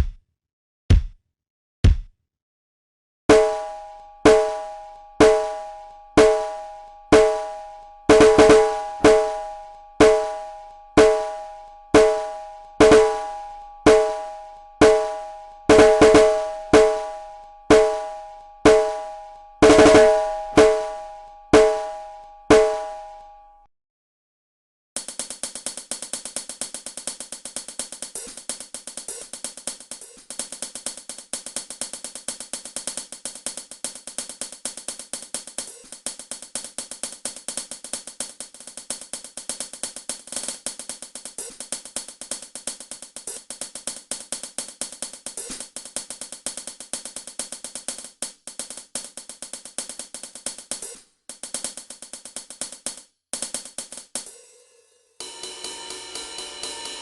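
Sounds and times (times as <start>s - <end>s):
percussion instrument strikes: 3.3s - 23.3s, 55.2s - 57.0s.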